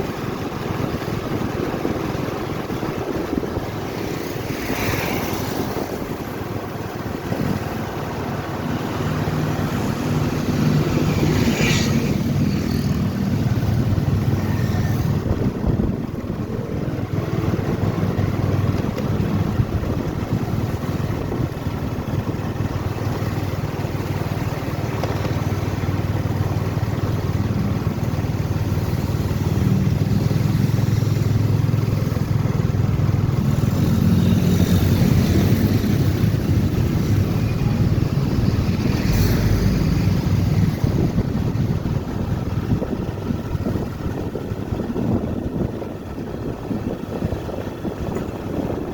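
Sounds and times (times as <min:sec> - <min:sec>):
motorcycle engine running: 0:00.0 - 0:48.9.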